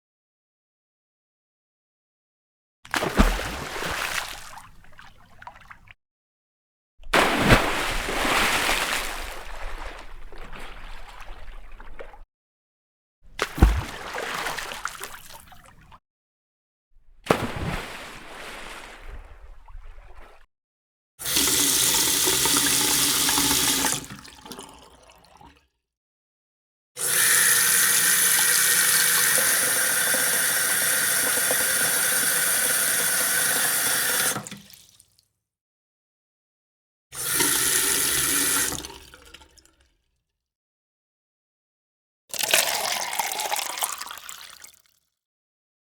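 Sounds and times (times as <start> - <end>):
short water splashes: 2.9 - 6.0, 7.0 - 12.2, 13.3 - 16.0, 17.3 - 20.5
water running from a tap: 21.3 - 24.0.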